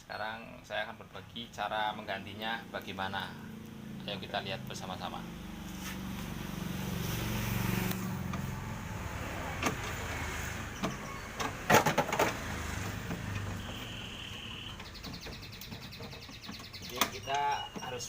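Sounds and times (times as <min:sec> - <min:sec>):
low engine hum: 0:02.3 - 0:17.8
sharp clicks: 0:14.7 - 0:17.9.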